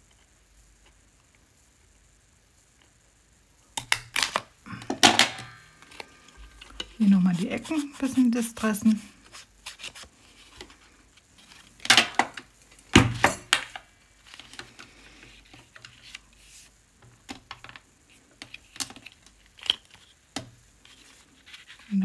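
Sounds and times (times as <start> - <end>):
tool scraping paper: 6.9 - 10.5, 20.8 - 22.0.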